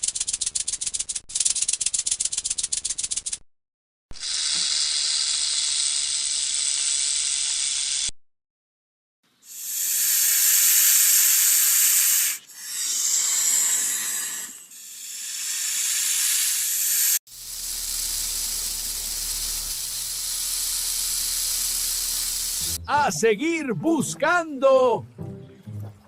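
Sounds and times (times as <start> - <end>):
snake hissing: 4.2 - 8.1, 9.4 - 22.8.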